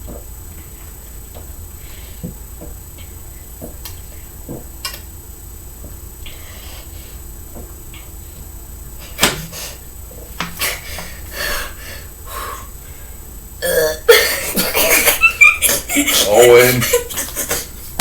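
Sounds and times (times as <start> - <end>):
person burping: 13.6 - 17.1.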